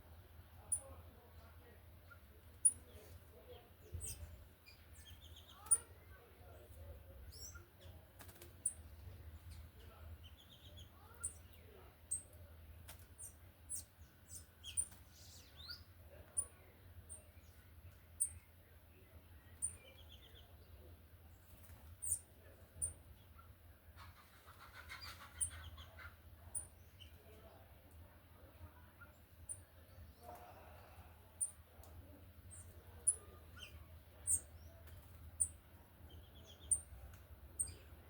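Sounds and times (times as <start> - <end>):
birds chirping: 0.0 - 38.0.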